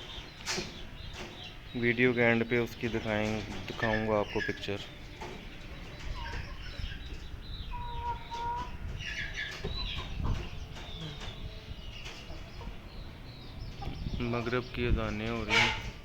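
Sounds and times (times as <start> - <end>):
chickens clucking: 0.0 - 16.0
low wind rumble: 5.4 - 16.0.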